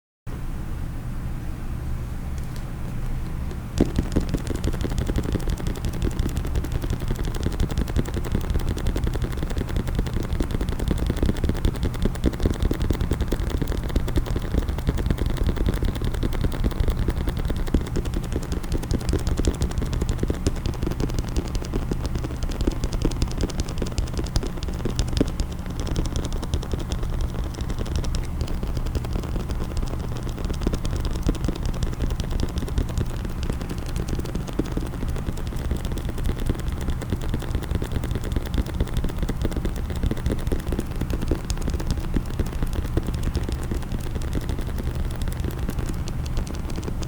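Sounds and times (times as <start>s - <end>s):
low hum: 2.3s - 47.0s
fast tapping on a hard case: 2.4s - 47.0s.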